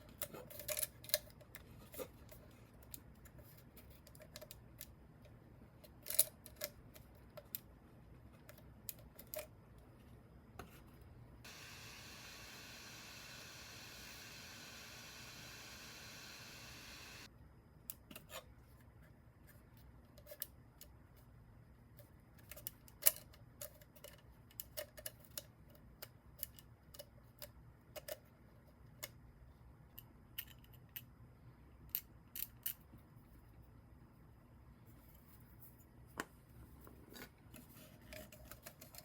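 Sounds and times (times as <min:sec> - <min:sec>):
steady hiss: 0:11.5 - 0:17.3.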